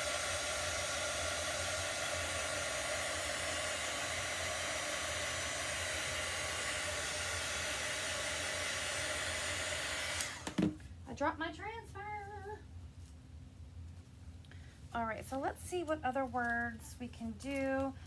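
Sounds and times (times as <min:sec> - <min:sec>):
blow dryer running: 0:00.0 - 0:10.9.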